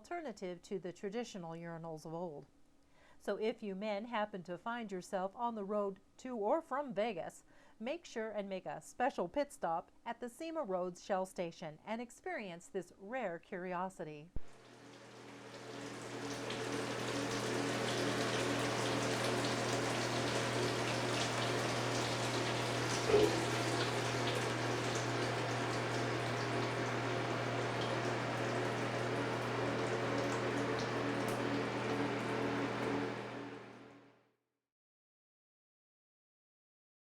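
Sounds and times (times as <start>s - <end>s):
water running down a urinal: 14.5s - 33.5s
steady low hum: 16.5s - 33.9s.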